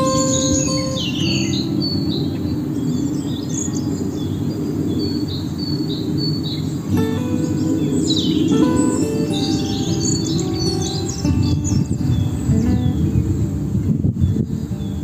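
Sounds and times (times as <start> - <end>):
short high chirps: 0.0 - 2.4
soft music with held notes: 0.0 - 4.4, 6.8 - 13.8
birds singing: 0.0 - 15.0.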